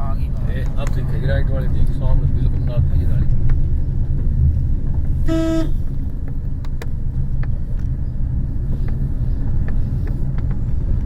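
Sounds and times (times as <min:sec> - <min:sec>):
car engine and road rumble: 0:00.0 - 0:11.0
car horn beep: 0:05.2 - 0:05.8.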